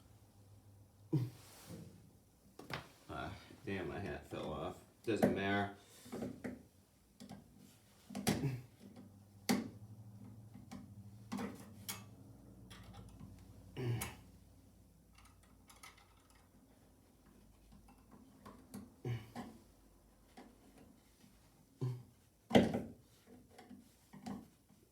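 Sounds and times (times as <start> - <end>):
light clicks and knocks from tools: 8.1 - 13.5, 15.1 - 19.6, 20.2 - 21.3, 22.5 - 24.8.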